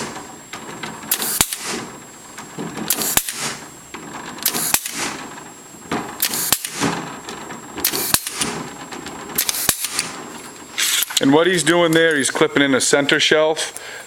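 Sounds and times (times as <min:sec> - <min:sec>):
clip gun hissing and snapping: 0:01.1 - 0:01.9, 0:02.9 - 0:03.6, 0:04.4 - 0:05.2, 0:06.2 - 0:07.0, 0:07.8 - 0:08.6, 0:09.4 - 0:10.2, 0:10.8 - 0:11.2.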